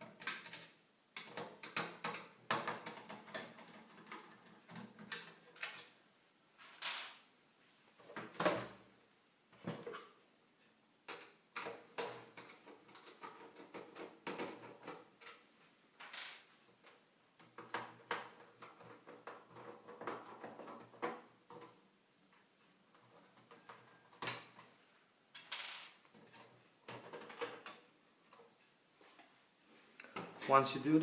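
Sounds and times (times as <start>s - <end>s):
parts clicking and scraping: 25.3s - 28.6s.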